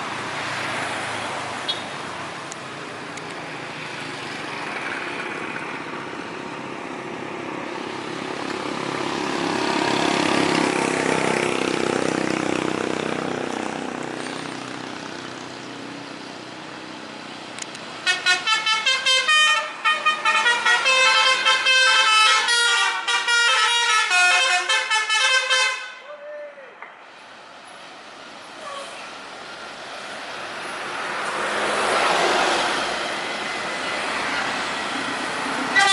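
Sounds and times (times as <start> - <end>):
heavy vehicle noise: 0.0 - 35.9
multi-tone bus horn melody: 18.0 - 26.1.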